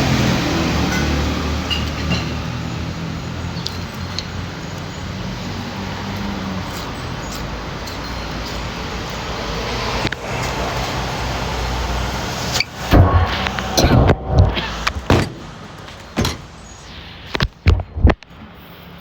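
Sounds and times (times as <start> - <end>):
road noise: 0.0 - 19.0
sharp knock: 12.8 - 15.6.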